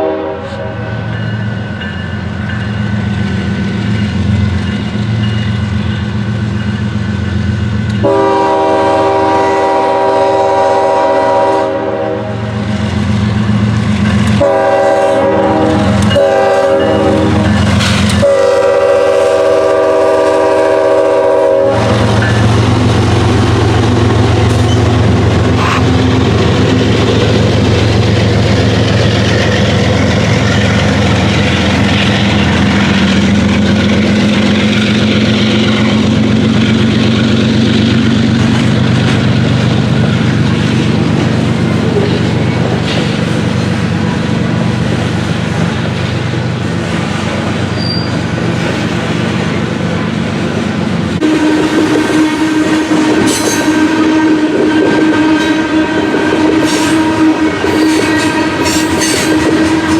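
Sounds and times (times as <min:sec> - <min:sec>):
locomotive air horn blast: 0:00.0 - 0:00.9, 0:08.0 - 0:12.6, 0:14.4 - 0:22.6, 0:51.2 - 0:59.9
diesel locomotive engine droning: 0:00.0 - 0:59.9.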